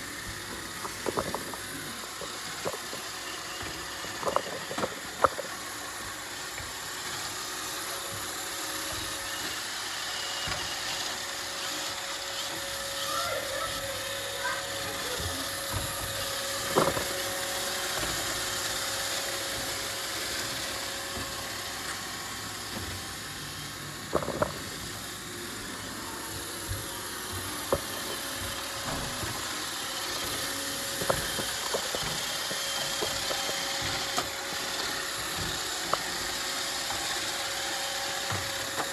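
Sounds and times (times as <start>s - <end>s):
robot vacuum motor whir: 0.0s - 38.9s.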